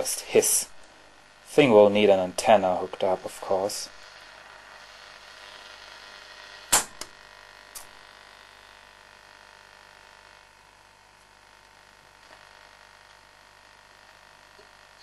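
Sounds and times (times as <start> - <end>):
radio static hiss: 0.0 - 15.0
sharp click: 6.7 - 7.9.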